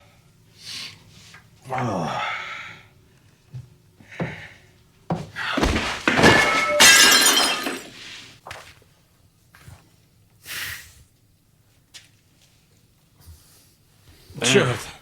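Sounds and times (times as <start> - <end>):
glass shattering and objects clattering: 5.6 - 8.1.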